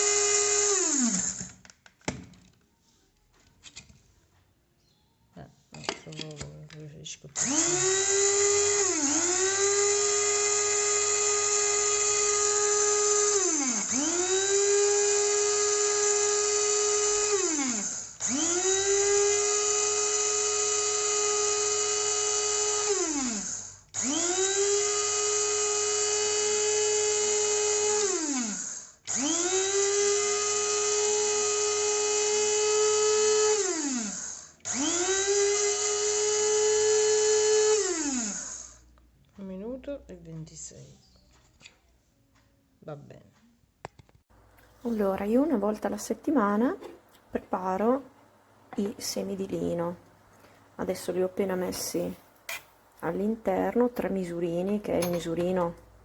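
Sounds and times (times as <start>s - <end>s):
coffee grinder motor whine: 0.0s - 1.7s, 7.4s - 38.9s.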